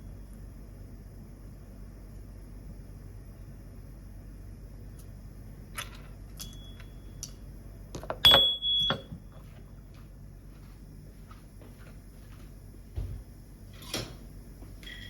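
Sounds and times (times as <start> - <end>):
metal knock with ringing tone: 8.2 - 9.1.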